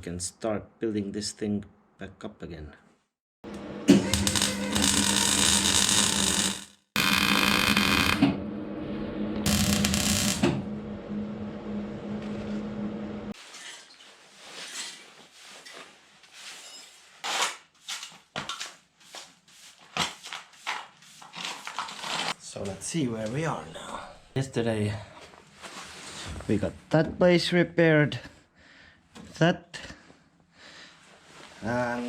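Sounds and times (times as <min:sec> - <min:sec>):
electrical hum: 0:03.5 - 0:13.4
power tool on sheet steel: 0:03.9 - 0:08.3, 0:09.4 - 0:10.6.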